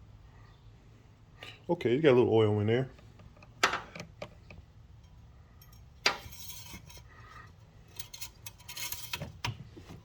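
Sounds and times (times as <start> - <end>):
metal clinks and rubbing: 5.1 - 7.2, 7.8 - 9.5.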